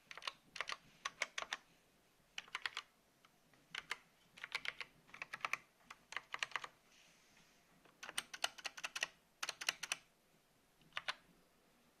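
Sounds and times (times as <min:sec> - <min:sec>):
mechanical keyboard typing: 0:00.0 - 0:01.6, 0:02.4 - 0:02.9, 0:03.7 - 0:06.8, 0:07.9 - 0:10.1, 0:10.9 - 0:11.2.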